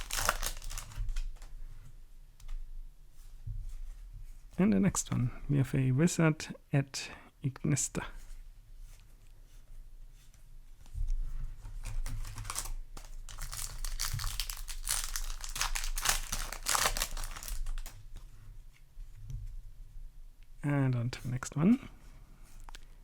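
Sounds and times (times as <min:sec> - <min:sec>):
foil wrapper tearing and crinkling: 0:00.0 - 0:01.4, 0:11.8 - 0:18.0.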